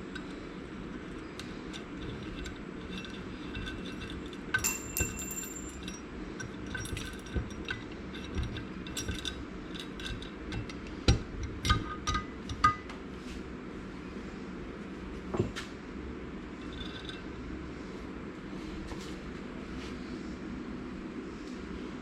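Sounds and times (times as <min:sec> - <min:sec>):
steady low hum: 0:00.0 - 0:22.0
metal parts clinking: 0:01.1 - 0:10.9, 0:16.6 - 0:17.3.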